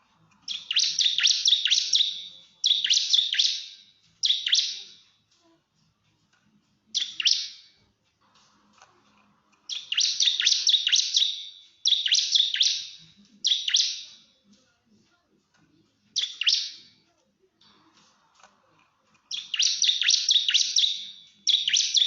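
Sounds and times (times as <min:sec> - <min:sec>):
bird chattering calls: 0:09.7 - 0:14.0.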